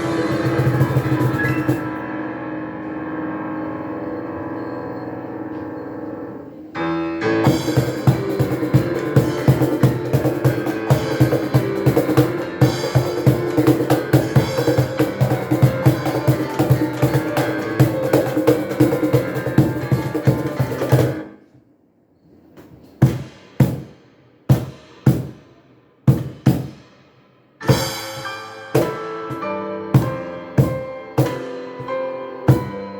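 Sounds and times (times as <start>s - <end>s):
cajon drum strokes: 0.0s - 2.2s, 7.4s - 21.4s
piano: 0.0s - 32.9s.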